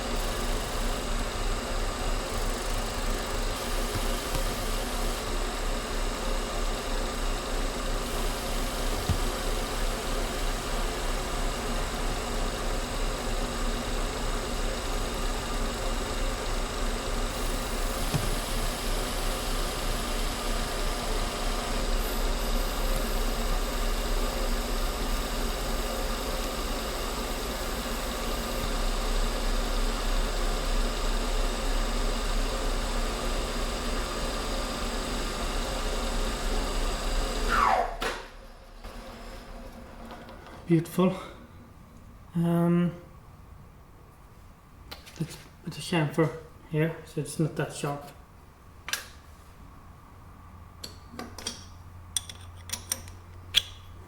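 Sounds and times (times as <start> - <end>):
lathe motor humming and whining: 0.0 - 38.0.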